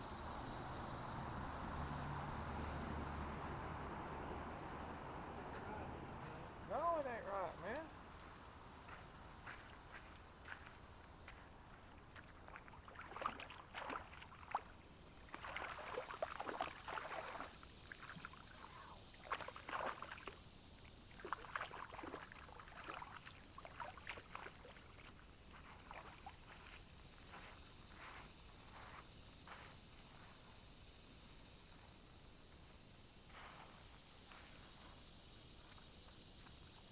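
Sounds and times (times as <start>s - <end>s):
paddle splashing in water: 12.2s - 20.4s, 21.1s - 26.4s.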